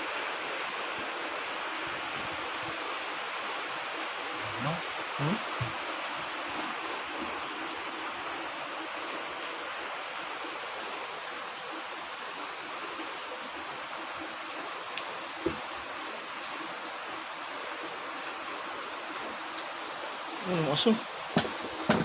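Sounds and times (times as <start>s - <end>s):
stream water rushing: 0.0s - 22.0s.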